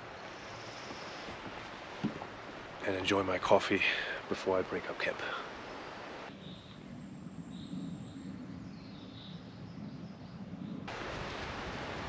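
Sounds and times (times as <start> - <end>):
rush of wind-like noise: 0.0 - 12.0
faint high bird chirps: 5.8 - 6.9.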